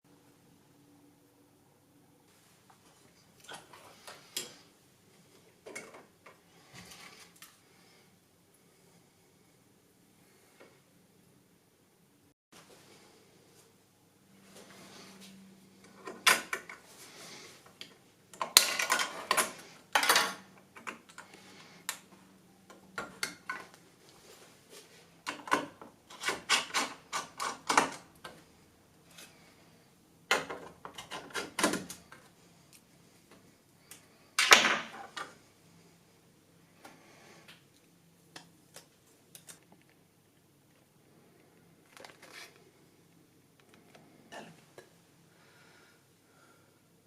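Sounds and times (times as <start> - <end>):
clicks and knocks of handled components: 17.8 - 22.1
packaging rustling: 41.8 - 42.7.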